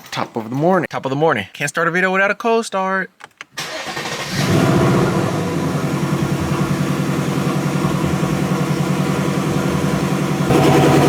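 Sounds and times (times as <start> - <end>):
car engine idling: 3.7 - 11.0.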